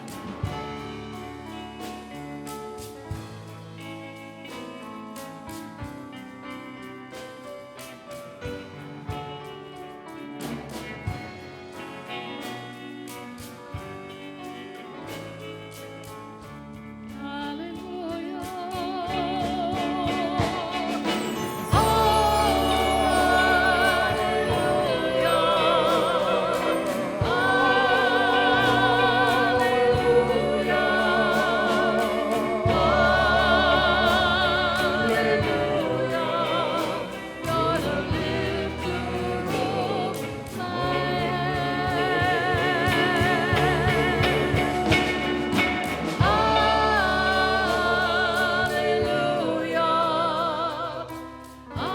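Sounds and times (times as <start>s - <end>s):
band playing worship music: 0.0s - 51.9s
singers with vibrato: 17.2s - 51.9s.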